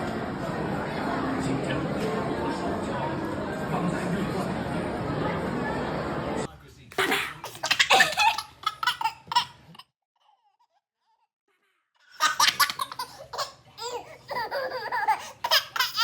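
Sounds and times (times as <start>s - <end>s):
baby laughing and squealing: 12.1s - 16.0s.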